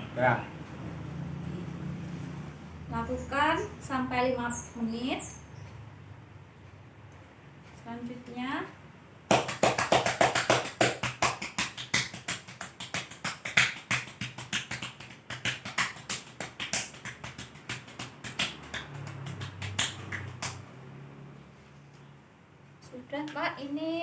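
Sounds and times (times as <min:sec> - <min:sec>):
cupped hands clapping on back: 0:09.3 - 0:20.7.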